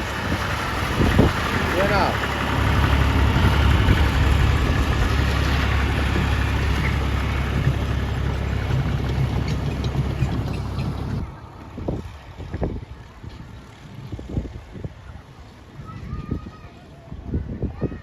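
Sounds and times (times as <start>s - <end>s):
engine rumbling: 0.0s - 15.8s.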